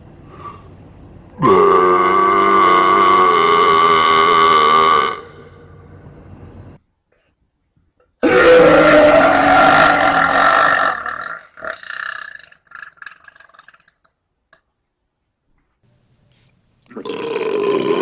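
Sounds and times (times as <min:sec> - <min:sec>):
person burping loudly: 0:01.4 - 0:05.6, 0:08.2 - 0:14.0, 0:16.9 - 0:18.0.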